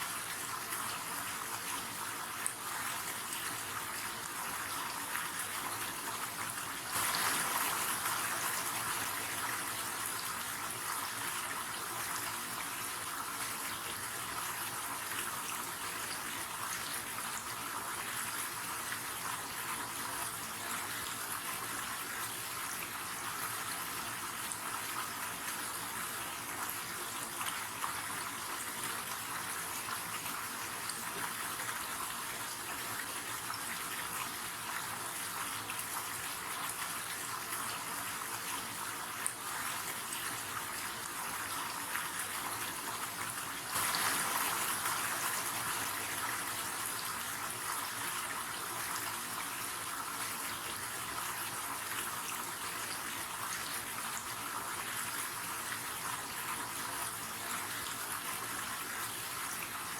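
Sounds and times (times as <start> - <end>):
river water running: 42.8 - 48.0.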